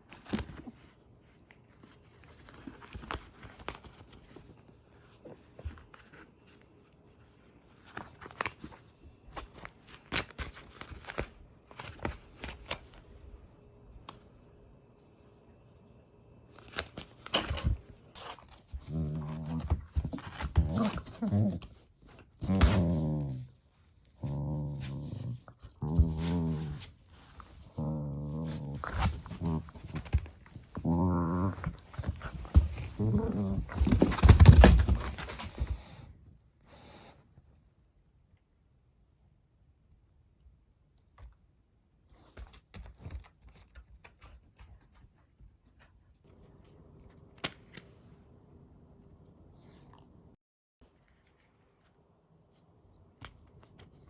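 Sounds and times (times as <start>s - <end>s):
dog growling: 18.8s - 23.5s, 24.2s - 26.9s, 27.6s - 34.3s.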